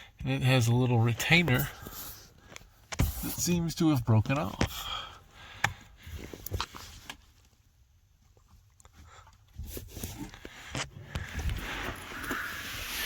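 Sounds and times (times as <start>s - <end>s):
heavy breathing: 4.6s - 6.5s.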